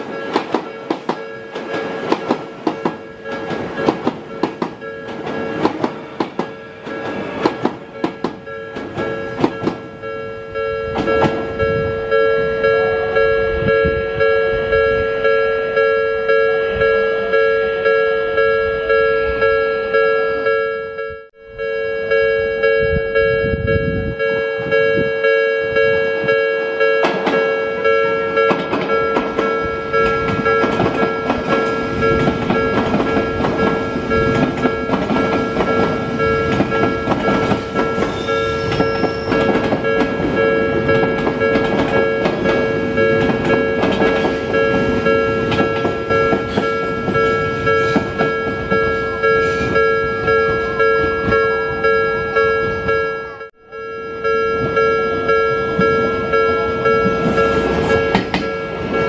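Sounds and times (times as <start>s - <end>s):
train wheels clattering over rail joints: 0.0s - 10.0s, 27.0s - 27.5s, 28.4s - 49.8s
level crossing two-tone bell: 7.9s - 59.0s.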